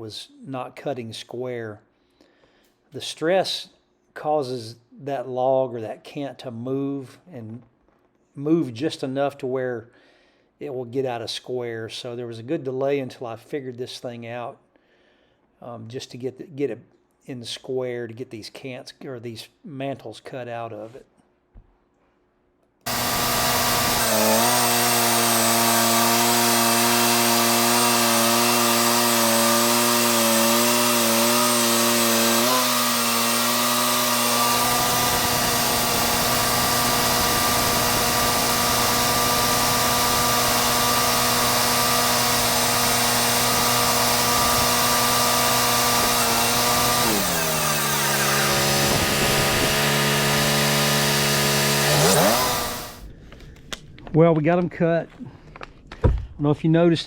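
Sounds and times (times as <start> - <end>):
band sawmill cutting wood: 22.9 - 53.1.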